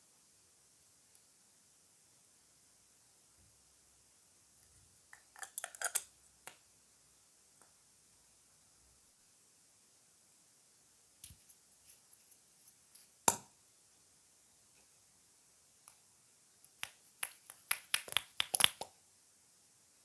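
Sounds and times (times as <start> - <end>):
slime clicking and popping: 16.8 - 18.9.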